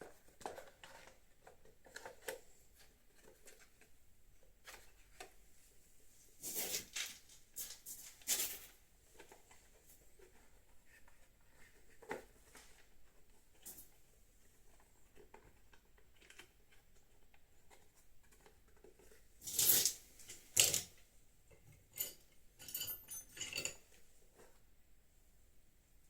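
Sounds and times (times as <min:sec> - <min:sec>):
tools clattering: 0:19.5 - 0:21.0, 0:21.8 - 0:24.0.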